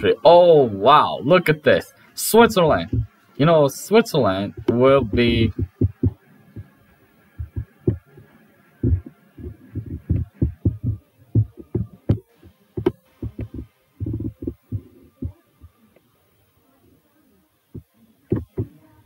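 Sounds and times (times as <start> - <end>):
muffled low thumps: 2.4 - 3.2, 4.5 - 8.2, 8.8 - 15.7, 17.7 - 18.8.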